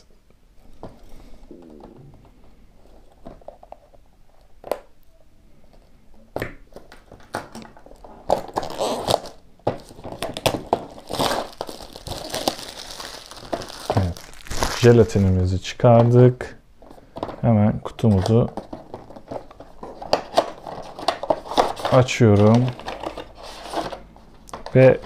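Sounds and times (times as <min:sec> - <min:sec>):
shrink wrap crinkling: 0:06.8 - 0:15.7.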